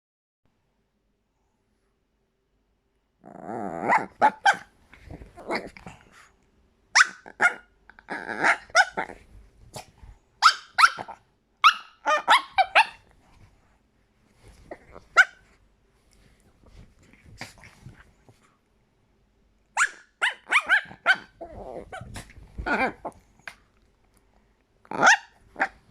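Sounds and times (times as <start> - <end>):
small dog growling: 3.2 - 4.4, 5.0 - 6.3, 7.2 - 10.0, 14.6 - 15.1, 20.9 - 23.6
small dog yapping: 3.9 - 4.7, 7.0 - 7.7, 10.4 - 13.0, 19.8 - 23.1, 24.9 - 25.8.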